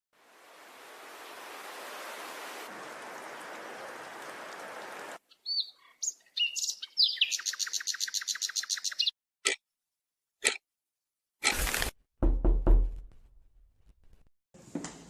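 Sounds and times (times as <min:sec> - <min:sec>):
rain hiss: 0:00.2 - 0:05.2
small bird chirping: 0:05.3 - 0:09.2.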